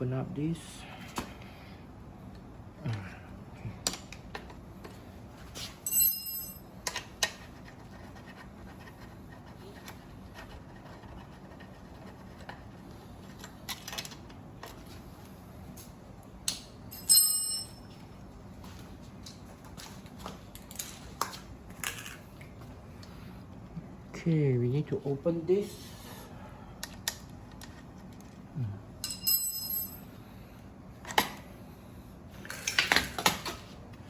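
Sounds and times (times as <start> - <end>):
bright metallic rings: 5.8 - 6.7, 16.9 - 18.0, 29.0 - 30.1.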